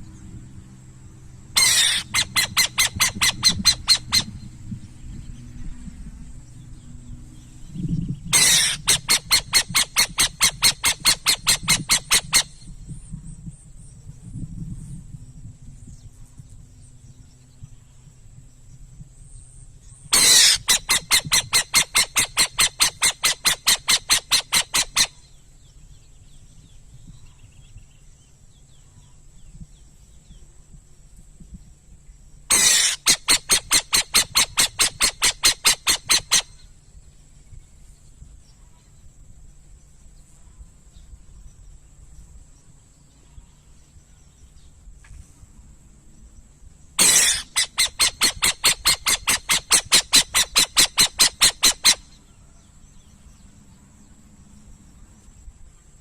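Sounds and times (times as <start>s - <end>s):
owl chattering call: 1.6s - 4.4s, 8.3s - 12.7s, 20.1s - 25.3s, 32.5s - 36.7s, 47.0s - 52.3s.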